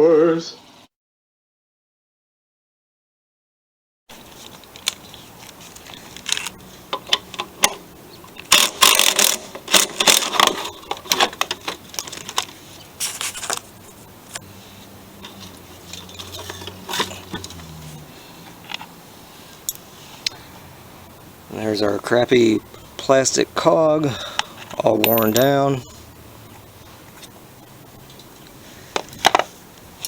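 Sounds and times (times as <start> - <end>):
metal and plastic parts clicking: 4.3 - 13.6.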